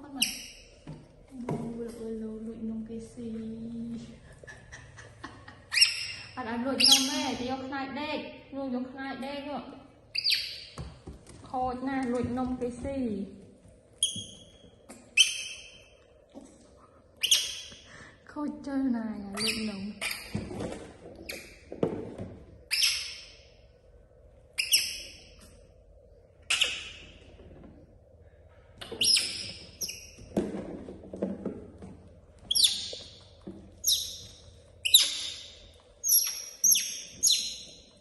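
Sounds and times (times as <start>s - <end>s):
monkey chirping squeaks: 5.7s - 7.5s, 10.1s - 10.8s, 14.0s - 14.6s, 15.2s - 15.9s, 17.2s - 17.8s, 19.4s - 20.3s, 22.7s - 23.4s, 24.6s - 25.2s, 26.5s - 27.0s, 28.9s - 30.2s, 32.5s - 33.2s, 33.8s - 37.8s.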